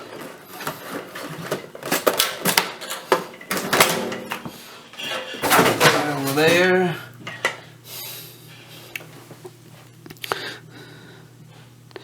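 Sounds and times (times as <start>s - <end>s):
tools rattling in metal drawer: 0.0s - 7.4s.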